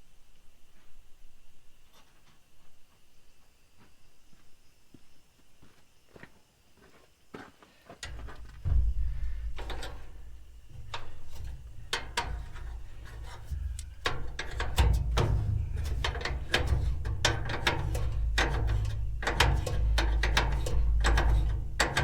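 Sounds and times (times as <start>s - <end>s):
low handling rumble: 8.0s - 22.0s.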